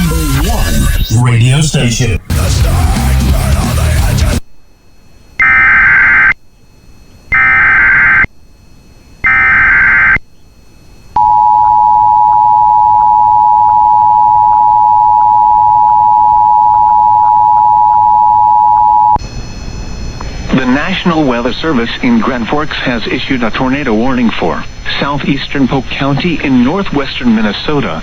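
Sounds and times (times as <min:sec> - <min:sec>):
screeching digital data bursts: 0:09.2 - 0:10.2.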